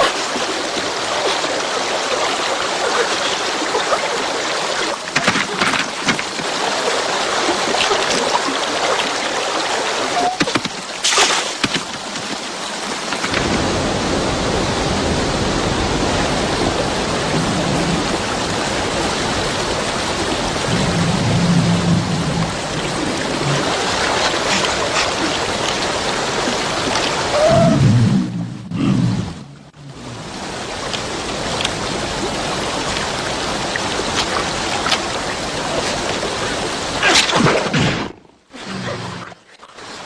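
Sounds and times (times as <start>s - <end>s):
knocks and splashes: 0.0s - 14.2s, 16.3s - 29.4s, 30.7s - 38.4s
running water rushing: 0.0s - 40.0s.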